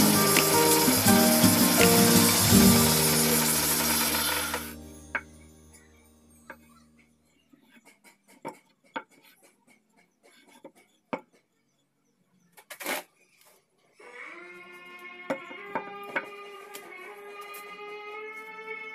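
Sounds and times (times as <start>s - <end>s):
steady sound: 0.0s - 5.8s.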